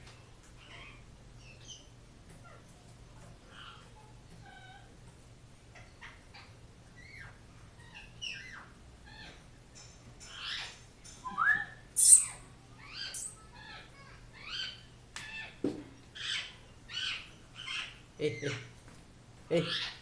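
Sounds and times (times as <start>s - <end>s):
parrot squawking and whistling: 10.5s - 13.4s
parrot high screech: 11.3s - 13.8s.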